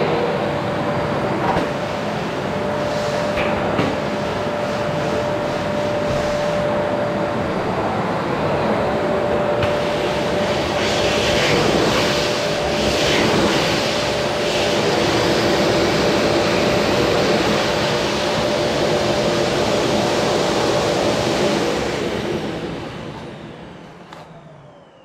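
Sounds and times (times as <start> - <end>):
vacuum cleaner running: 0.0 - 25.0
motor winding down whine: 22.0 - 25.0.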